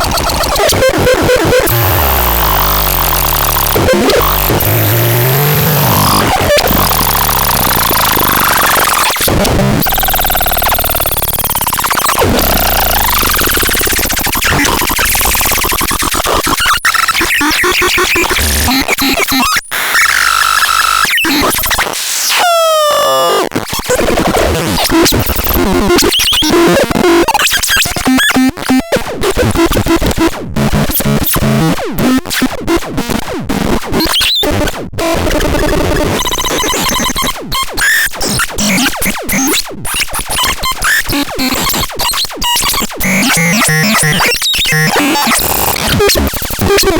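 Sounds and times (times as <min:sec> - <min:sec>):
harsh synthesizer noise: 0:00.0 - 0:21.6, 0:41.1 - 0:46.9.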